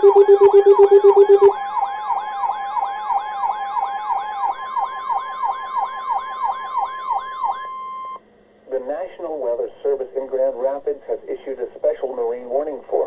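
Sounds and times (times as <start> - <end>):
falling electronic yelp: 0.0 - 1.6
steady alarm tones: 0.0 - 8.2.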